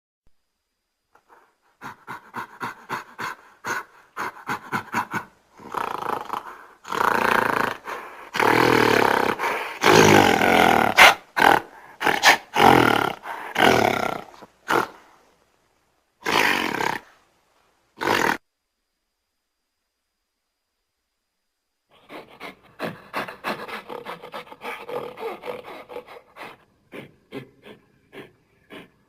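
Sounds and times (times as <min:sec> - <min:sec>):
gorilla grunting hoots: 0:01.8 - 0:15.0, 0:16.2 - 0:17.1, 0:21.9 - 0:29.0
gorilla roars: 0:01.8 - 0:15.0, 0:16.2 - 0:17.1, 0:18.0 - 0:18.4, 0:21.9 - 0:29.0.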